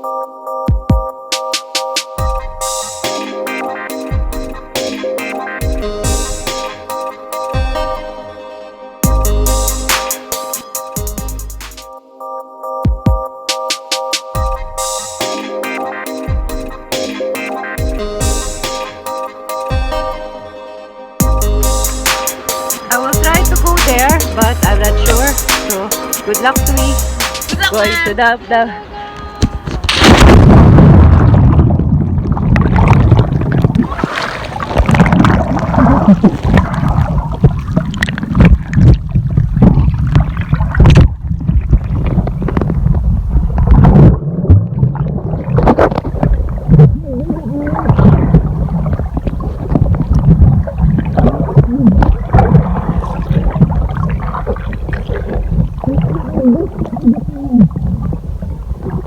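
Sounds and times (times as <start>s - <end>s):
water splashing from swimming: 29.8s - 59.0s.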